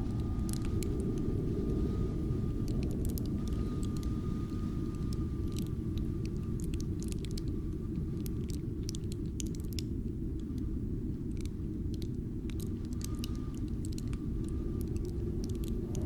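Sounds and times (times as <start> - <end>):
high wind whistle: 0.0 - 6.6, 12.8 - 16.0
crackles of ice: 0.0 - 16.0
wind rumbling low: 0.0 - 16.0.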